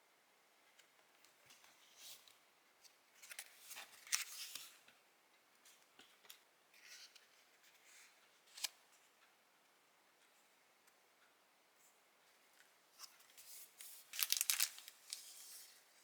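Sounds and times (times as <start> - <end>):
paper and stickers rustling: 13.0 - 15.9.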